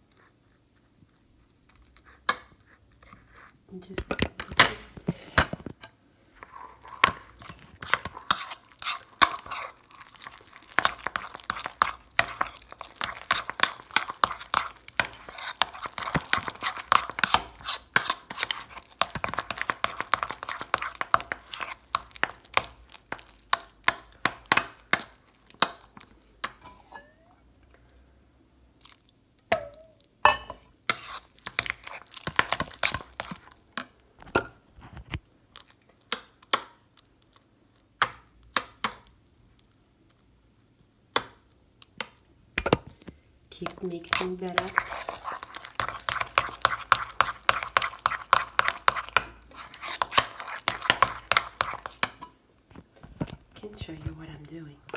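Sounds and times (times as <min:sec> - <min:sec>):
spoon scraping a dish: 0:01.8 - 0:25.1, 0:26.5 - 0:27.2, 0:30.4 - 0:33.6, 0:43.6 - 0:54.2.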